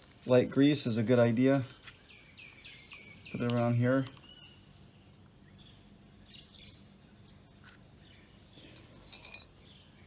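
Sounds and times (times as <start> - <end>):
faint bird chirps: 1.6 - 10.0.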